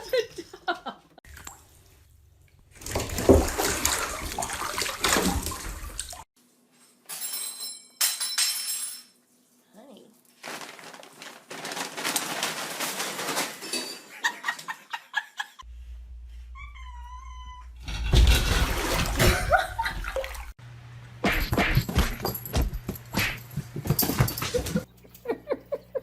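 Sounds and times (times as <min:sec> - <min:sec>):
cat meowing: 0:16.6 - 0:17.8.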